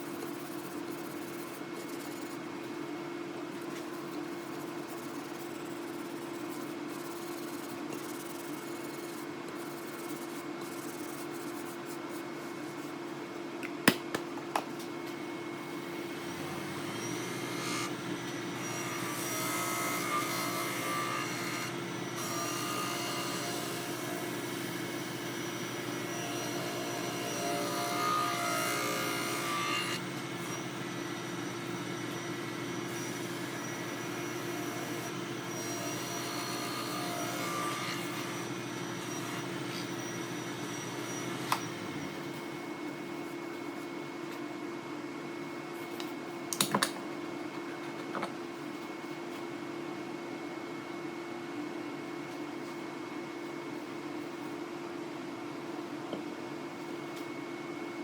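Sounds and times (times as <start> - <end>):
woodworking machine humming: 15.4 - 42.7.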